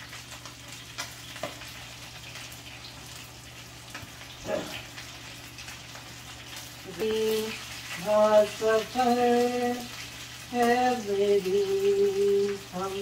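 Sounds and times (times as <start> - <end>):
chicken sizzling in hot oil: 0.0 - 13.0.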